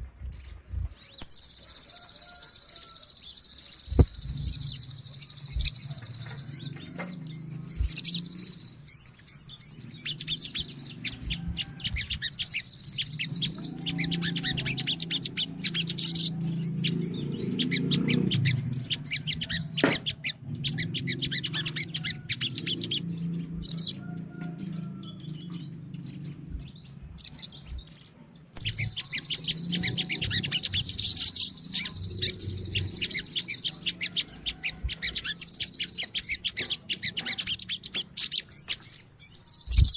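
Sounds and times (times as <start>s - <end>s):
birds chirping and twittering: 0.0s - 39.9s
steady low rumble: 3.8s - 35.4s.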